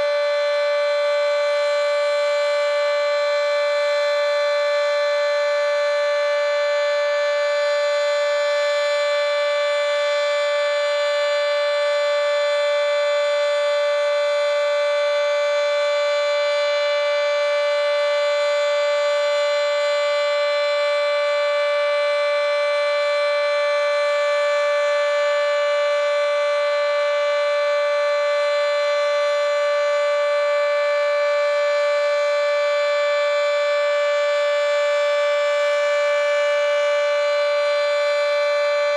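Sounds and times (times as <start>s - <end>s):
steady dual-tone warning siren: 0.0s - 38.9s.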